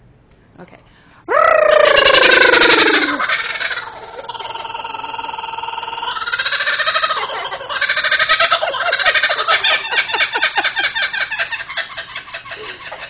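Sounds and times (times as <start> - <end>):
parrot calling: 1.3 - 10.2.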